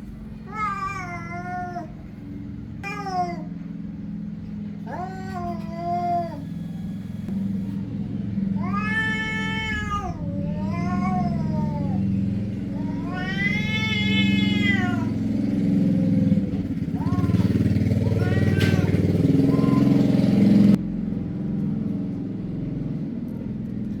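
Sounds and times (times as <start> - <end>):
cat meowing: 0.4 - 3.7, 4.8 - 7.2, 8.5 - 16.3, 16.9 - 20.2.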